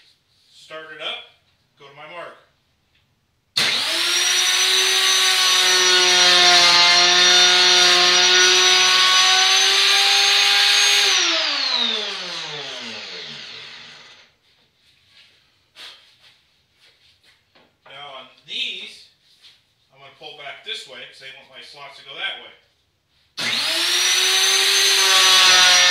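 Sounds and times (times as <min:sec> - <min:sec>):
router spinning down: 0:03.6 - 0:14.3, 0:23.4 - 0:25.9
router whining while cutting wood: 0:03.6 - 0:14.3, 0:23.4 - 0:25.9.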